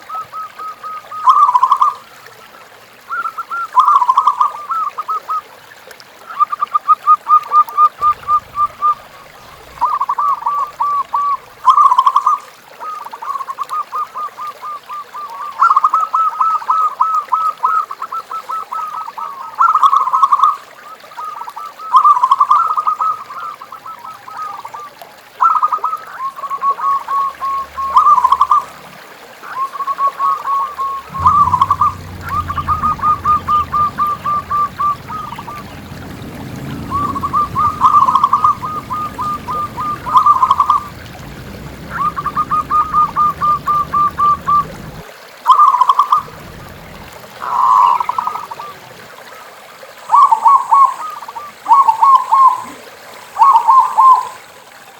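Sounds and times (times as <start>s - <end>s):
doves cooing: 8.0s - 12.1s, 26.8s - 45.0s, 46.2s - 49.0s.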